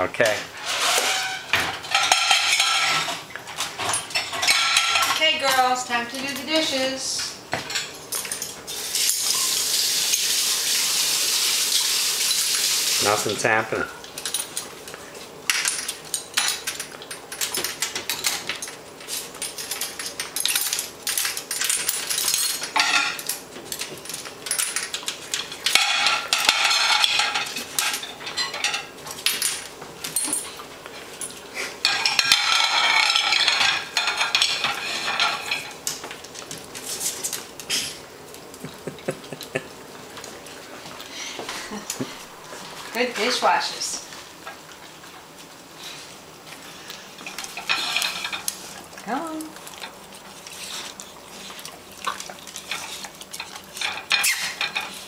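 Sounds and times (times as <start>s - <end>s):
dishes and cutlery clinking: 0.2s - 6.9s, 7.5s - 10.4s, 13.8s - 36.2s, 47.2s - 55.0s.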